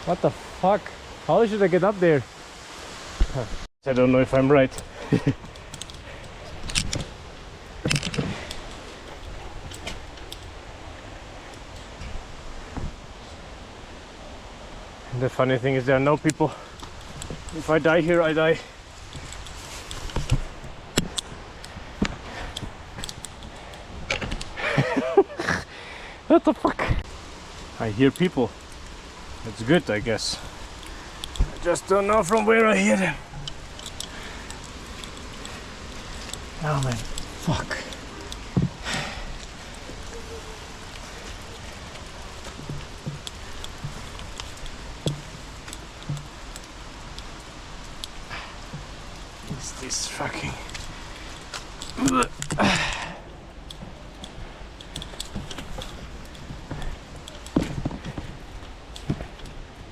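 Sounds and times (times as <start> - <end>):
rain on foliage: 0.0 - 59.9
light rustling: 3.0 - 13.7, 15.6 - 25.2, 26.8 - 59.9
footsteps on forest path: 4.0 - 13.7, 16.0 - 25.0, 27.0 - 59.9
light clicks: 4.7 - 12.2, 16.1 - 17.9, 19.0 - 24.8, 33.2 - 59.9
dull thumps: 38.5 - 47.4.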